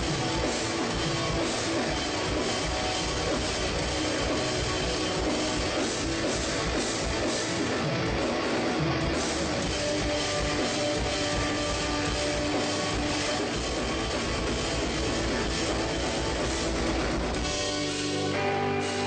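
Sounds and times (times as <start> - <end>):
distorted electric guitars: 0.0 - 19.0
drum kit: 0.0 - 19.0.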